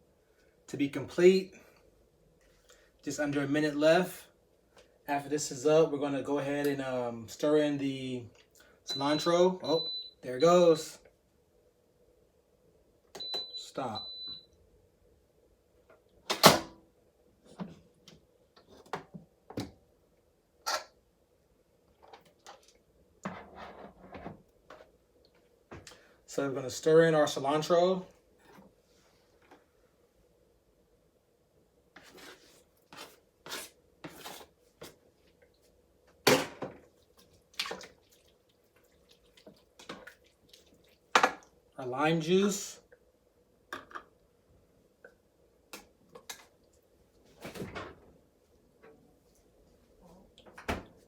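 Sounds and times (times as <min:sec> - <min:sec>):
utensil scraping: 0:32.0 - 0:34.5.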